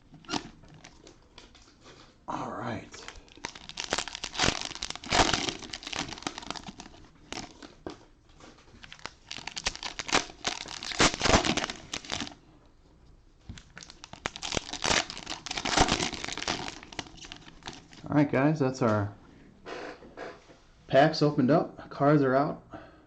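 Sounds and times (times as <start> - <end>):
cellophane wrappers crinkling and tearing: 0.0 - 2.0, 2.9 - 7.8, 8.4 - 12.4, 13.5 - 18.1.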